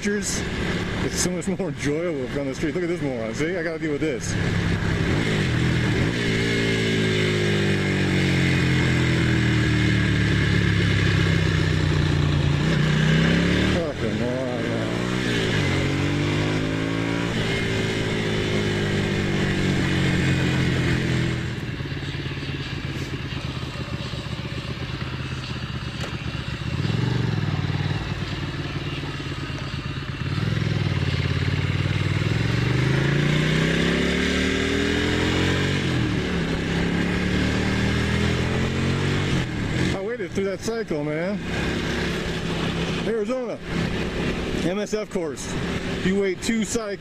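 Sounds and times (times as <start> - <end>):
motorcycle engine revving: 0.0 - 47.0.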